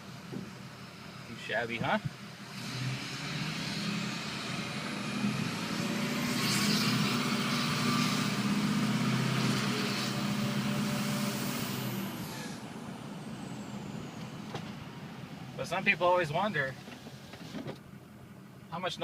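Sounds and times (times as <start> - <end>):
diesel truck engine: 0.0 - 19.0
turbocharger whistling: 2.5 - 14.6.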